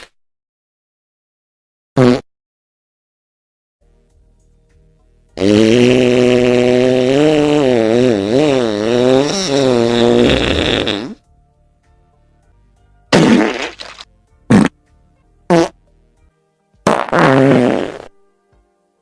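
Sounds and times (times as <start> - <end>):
long fart: 2.0 - 2.3, 5.4 - 11.2, 13.1 - 14.8, 15.5 - 15.8, 16.8 - 18.2.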